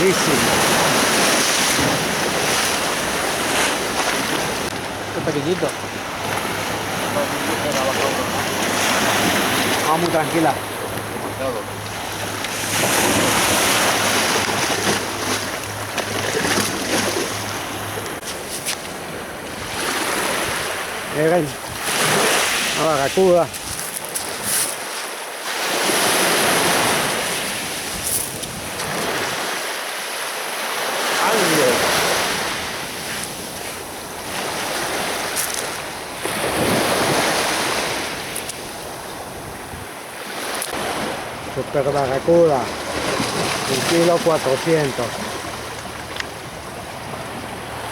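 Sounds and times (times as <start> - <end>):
surf washing onto beach: 0.0 - 47.9
wind on microphone: 18.1 - 24.7, 26.8 - 29.4, 32.4 - 40.1.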